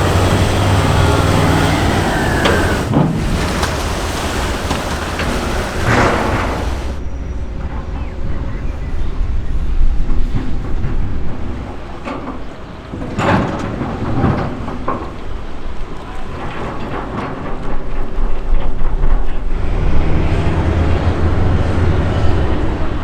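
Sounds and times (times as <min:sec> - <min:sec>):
diesel engine running: 0:00.0 - 0:11.7.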